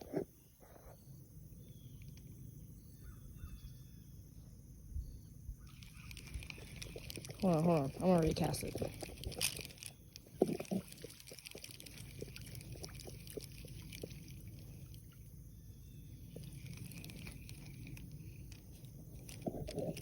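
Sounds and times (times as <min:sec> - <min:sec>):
low steady rumble: 0:00.4 - 0:20.0
fishing reel clicking: 0:05.7 - 0:14.6, 0:16.3 - 0:20.0.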